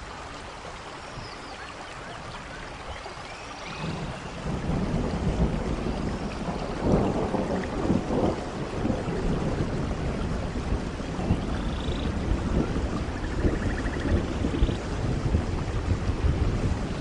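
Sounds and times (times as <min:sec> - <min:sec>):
steady rain: 0:00.0 - 0:17.0
thunder rumbling: 0:03.7 - 0:17.0.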